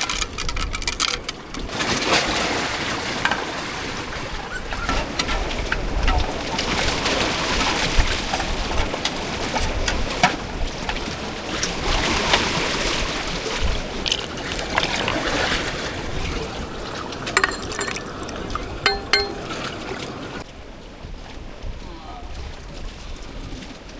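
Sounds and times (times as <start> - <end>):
water splashing against raft: 14.0 - 20.4.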